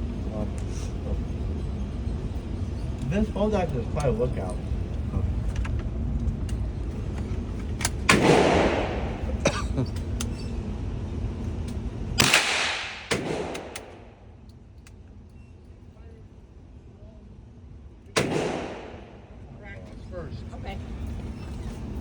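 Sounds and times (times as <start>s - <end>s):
rifle shots with echo: 8.0s - 9.3s, 12.2s - 14.2s, 18.1s - 19.4s.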